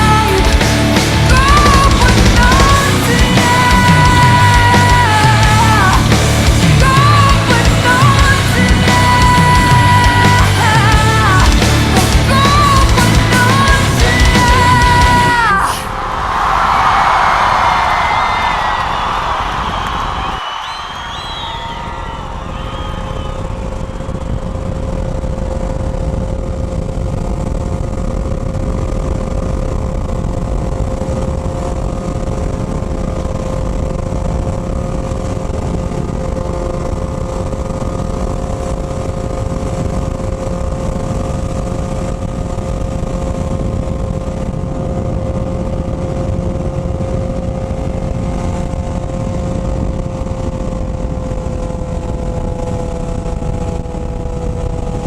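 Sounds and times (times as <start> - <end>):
motorcycle engine running: 0.0 - 15.8, 19.7 - 55.0
low rumble: 0.0 - 55.0.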